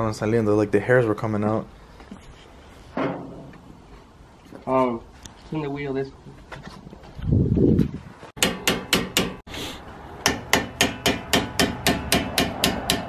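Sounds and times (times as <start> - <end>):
hammer striking brake rotor: 10.2 - 13.0.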